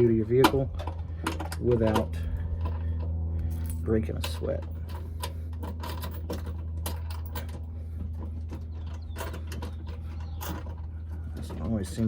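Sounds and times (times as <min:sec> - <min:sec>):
steady low hum: 0:00.0 - 0:12.0
metal clicking and clinking: 0:03.6 - 0:07.6.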